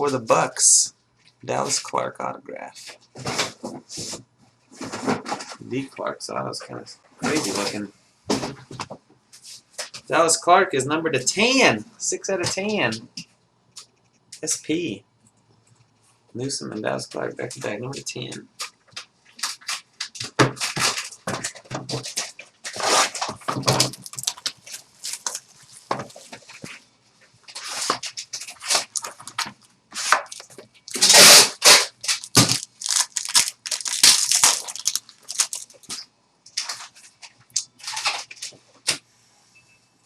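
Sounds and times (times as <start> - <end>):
packaging tearing and crinkling: 22.2 - 25.5, 27.7 - 36.0.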